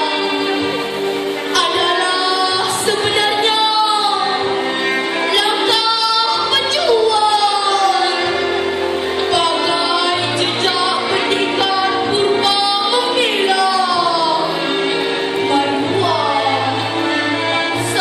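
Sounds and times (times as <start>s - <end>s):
instrumental backing music: 0.0s - 18.0s
young woman singing: 1.5s - 4.5s, 5.3s - 8.2s, 9.2s - 14.6s.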